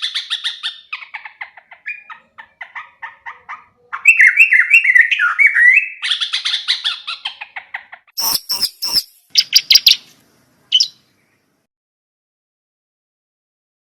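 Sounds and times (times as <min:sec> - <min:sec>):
bird chattering call: 0:08.2 - 0:10.1, 0:10.7 - 0:11.1.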